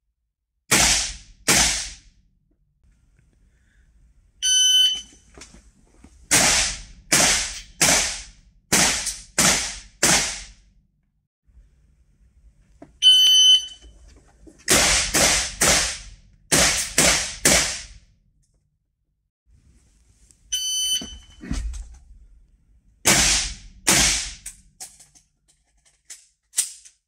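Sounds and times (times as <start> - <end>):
shot timer beep: 4.4 - 5.1, 13.0 - 13.8
rifle shots: 6.3 - 10.5, 23.1 - 24.4.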